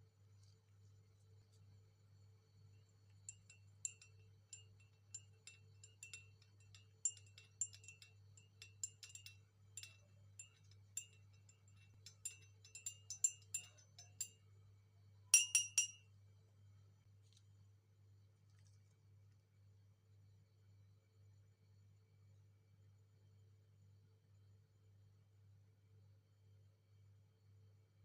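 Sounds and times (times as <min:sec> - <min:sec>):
spoon clinking against glass: 0:03.1 - 0:14.4, 0:15.4 - 0:16.0.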